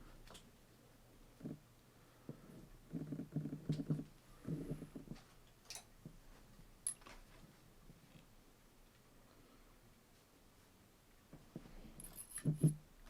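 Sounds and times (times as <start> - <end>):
cord rattling and rubbing: 11.5 - 12.9.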